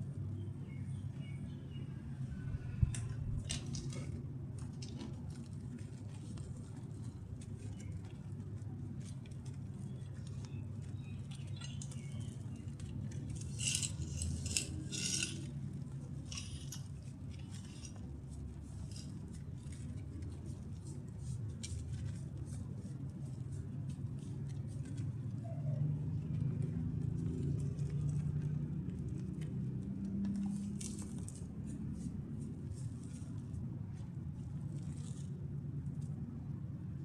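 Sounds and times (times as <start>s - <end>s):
steady low hum: 0.0s - 37.0s.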